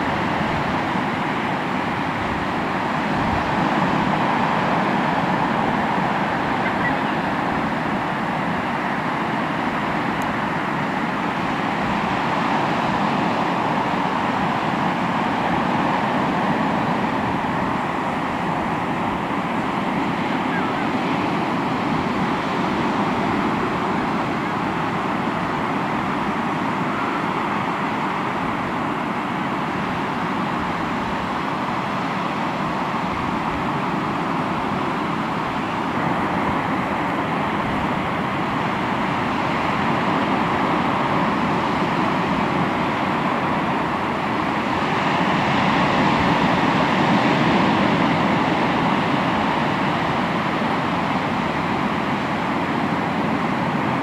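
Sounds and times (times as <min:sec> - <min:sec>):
sea waves on shore: 0:00.0 - 0:54.0.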